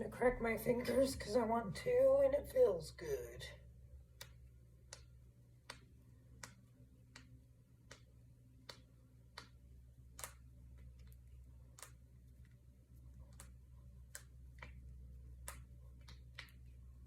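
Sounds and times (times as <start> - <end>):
knuckles cracking: 4.1 - 17.0.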